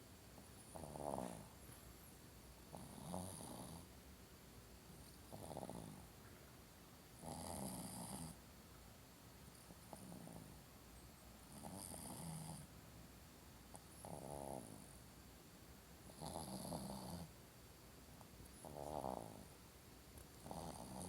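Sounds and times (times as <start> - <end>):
dog snoring: 0.6 - 1.6, 2.7 - 3.9, 5.3 - 6.1, 7.2 - 8.4, 9.8 - 10.6, 11.5 - 12.7, 13.7 - 15.0, 16.0 - 17.3, 18.6 - 19.5, 20.4 - 21.0.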